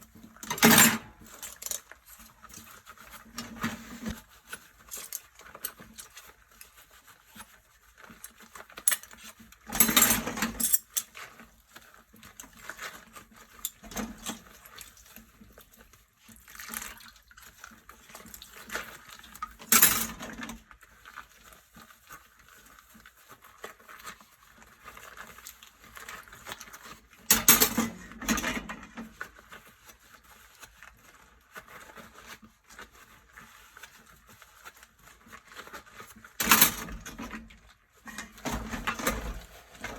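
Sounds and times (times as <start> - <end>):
dishes and cutlery clinking: 0.4 - 1.9
quiet rubbing and handling: 37.8 - 39.9.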